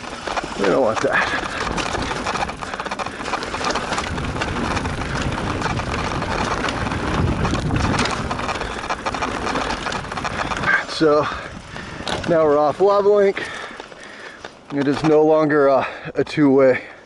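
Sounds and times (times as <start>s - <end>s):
wind on microphone: 0.0s - 12.5s
bike rattles and knocks: 0.0s - 16.1s
tyres on dirt and gravel: 0.0s - 17.0s.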